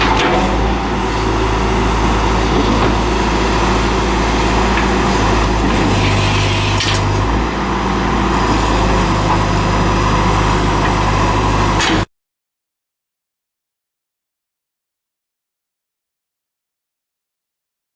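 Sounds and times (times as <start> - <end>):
diesel engine running: 0.0 - 12.1.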